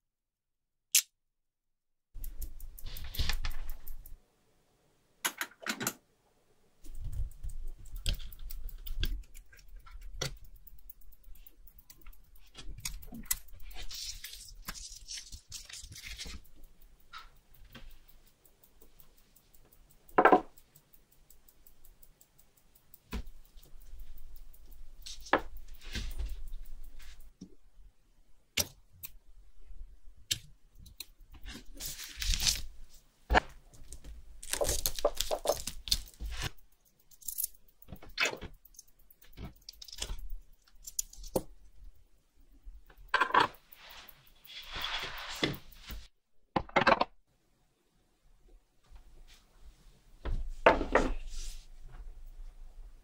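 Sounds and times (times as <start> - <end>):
quick ticks: 2.2 - 4.2, 6.8 - 27.5, 33.8 - 46.1
small metal tools clicking: 2.2 - 4.2, 6.8 - 27.5, 28.6 - 46.1.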